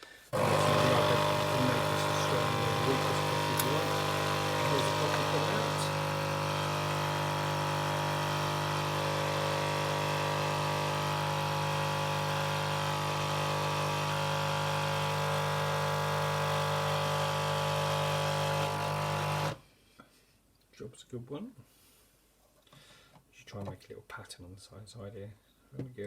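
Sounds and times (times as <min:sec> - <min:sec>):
coffee machine pump buzzing: 0:00.3 - 0:19.6
coffee pouring into cup: 0:00.4 - 0:19.6.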